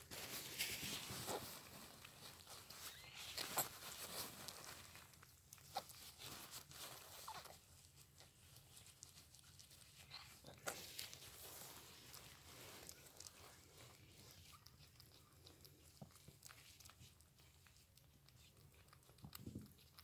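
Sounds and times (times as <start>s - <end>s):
faint clicks and rustles: 0.0s - 20.0s
kitten squeaking: 2.5s - 4.3s.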